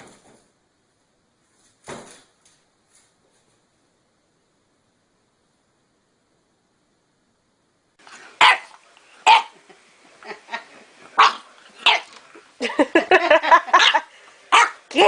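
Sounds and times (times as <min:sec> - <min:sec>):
dog barking: 0:08.4 - 0:09.6, 0:11.2 - 0:12.2, 0:13.5 - 0:14.9.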